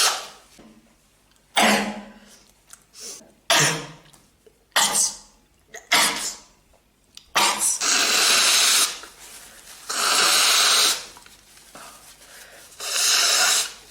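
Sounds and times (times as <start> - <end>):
person sneezing: 1.6 - 2.4, 3.0 - 4.0, 4.8 - 6.5, 7.4 - 8.8.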